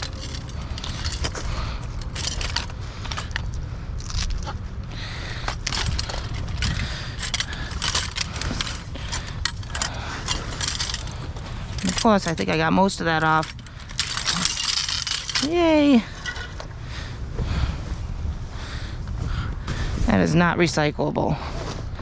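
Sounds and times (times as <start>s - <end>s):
scrap metal clattering and scraping: 0.0s - 16.7s.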